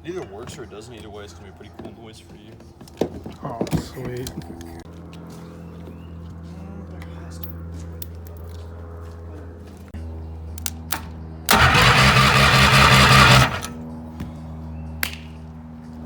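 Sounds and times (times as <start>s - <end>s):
small engine running loudly: 11.5s - 14.7s.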